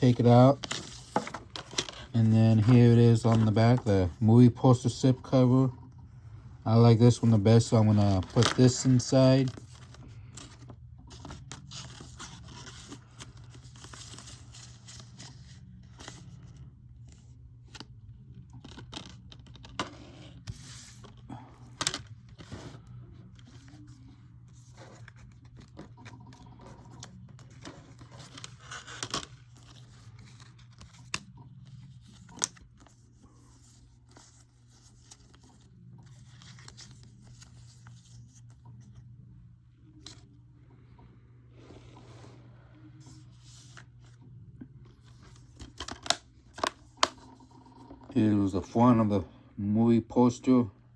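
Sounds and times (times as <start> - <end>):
paper sliding and scraping: 19.8 - 21.2, 41.5 - 44.2.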